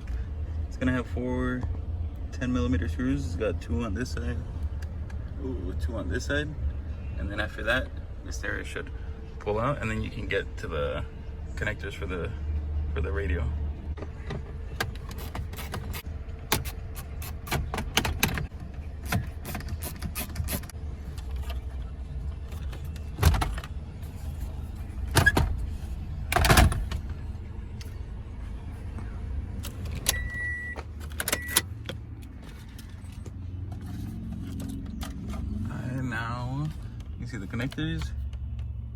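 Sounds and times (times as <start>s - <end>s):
high steady beep: 30.1s - 30.8s.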